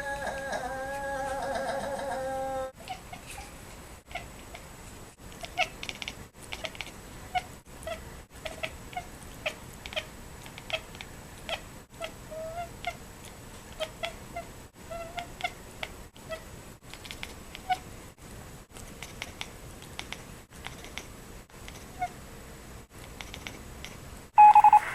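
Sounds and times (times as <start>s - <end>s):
cat chirping and meowing: 5.4s - 13.0s, 13.7s - 16.4s.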